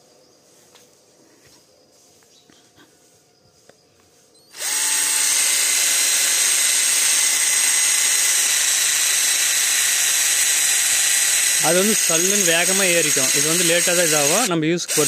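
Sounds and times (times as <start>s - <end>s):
cordless drill motor whining: 4.5s - 15.0s.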